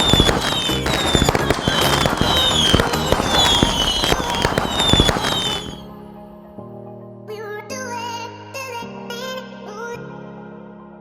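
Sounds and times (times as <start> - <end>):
firecrackers cracking and banging: 0.0 - 5.9
short falling whistles: 0.0 - 5.9.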